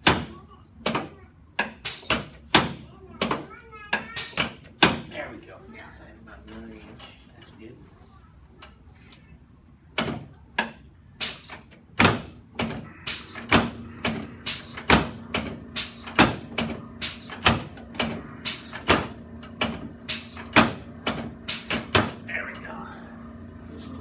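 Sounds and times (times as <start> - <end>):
sharp knocks from equipment: 10.0 - 22.2
steady low hum: 11.0 - 24.0.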